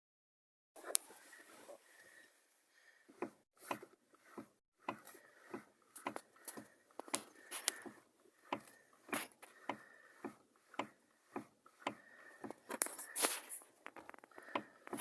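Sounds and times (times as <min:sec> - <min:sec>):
steering knocking: 0:03.1 - 0:12.8, 0:13.9 - 0:15.0.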